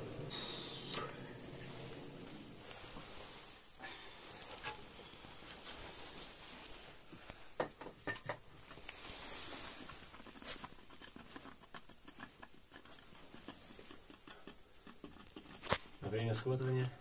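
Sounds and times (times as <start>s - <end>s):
soft hiss: 0.0s - 14.8s
clicks taps and scrapes on rock: 10.0s - 16.4s.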